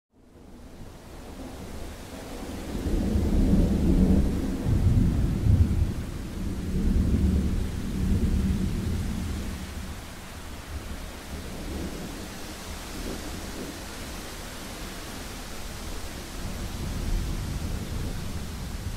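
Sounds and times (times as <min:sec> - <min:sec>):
steady rain: 0:00.2 - 0:18.9
thunder rumbling: 0:01.4 - 0:10.1, 0:15.6 - 0:18.9.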